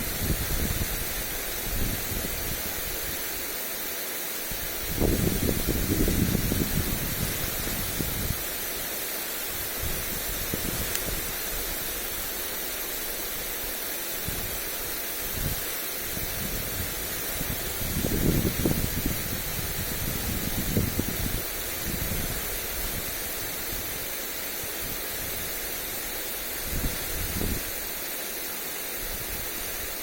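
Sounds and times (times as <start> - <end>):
wind buffeting microphone: 0.0 - 3.1, 4.8 - 8.6, 9.5 - 11.7, 15.3 - 24.0, 26.6 - 27.7
sprinkler spraying water: 0.0 - 30.0.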